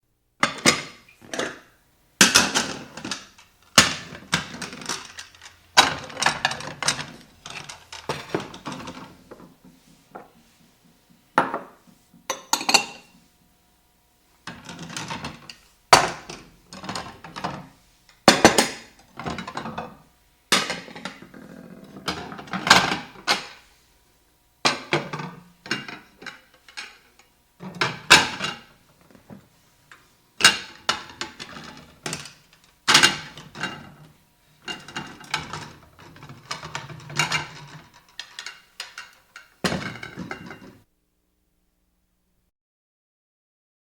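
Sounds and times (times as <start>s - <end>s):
dishware clinking: 11.4s - 13.1s.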